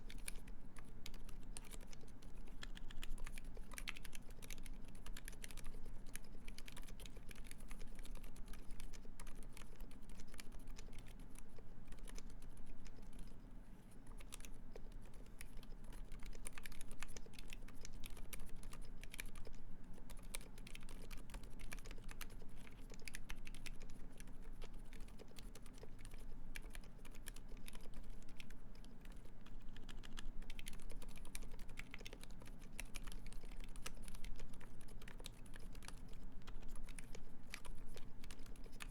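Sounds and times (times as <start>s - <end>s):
quiet keyboard keystrokes: 0.0s - 38.9s.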